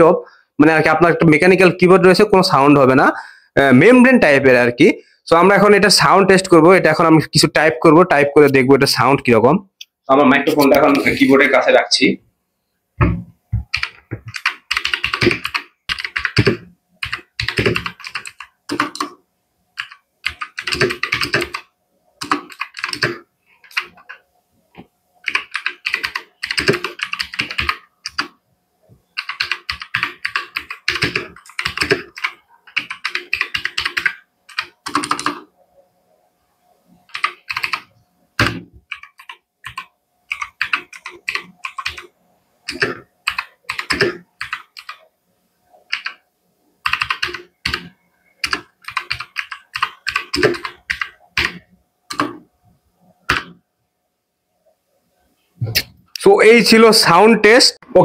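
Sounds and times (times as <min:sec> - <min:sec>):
mechanical keyboard typing clicks: 0:13.7 - 0:19.2, 0:19.8 - 0:24.2, 0:25.2 - 0:28.3, 0:29.2 - 0:35.4, 0:37.1 - 0:42.1, 0:42.7 - 0:45.0, 0:46.8 - 0:52.4.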